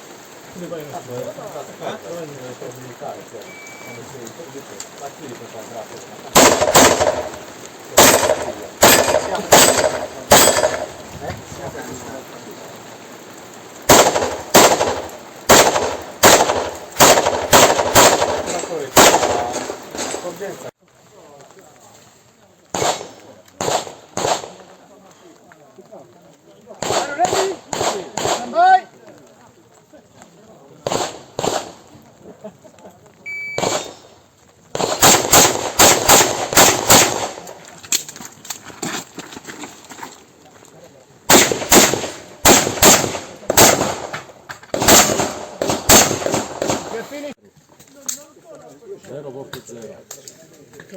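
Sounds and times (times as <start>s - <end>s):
electronic shot-timer beep: 3.5s - 4.0s, 33.3s - 33.9s
pistol shots: 6.4s - 7.4s, 8.0s - 11.0s, 13.9s - 20.2s, 22.7s - 24.6s, 26.8s - 28.6s, 30.8s - 31.8s, 33.5s - 34.1s, 34.7s - 37.5s, 41.3s - 47.0s
handgun shots with ringing echo: 8.0s - 10.9s.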